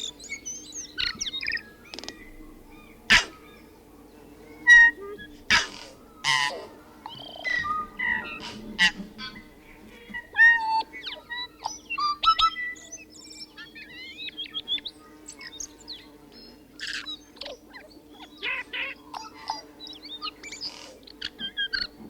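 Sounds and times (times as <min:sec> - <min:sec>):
bird singing whistled notes: 0:00.0 - 0:03.7, 0:07.1 - 0:08.4
harsh wheezy bird rasps: 0:03.1 - 0:03.4.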